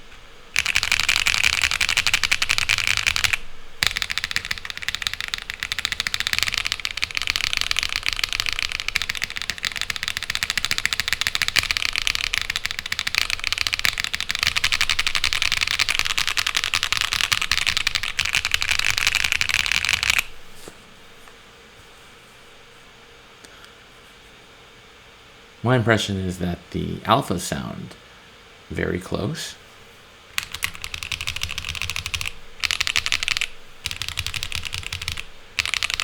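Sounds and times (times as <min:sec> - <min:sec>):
fast typing on mechanical keyboard: 0:00.6 - 0:20.3, 0:30.4 - 0:36.0.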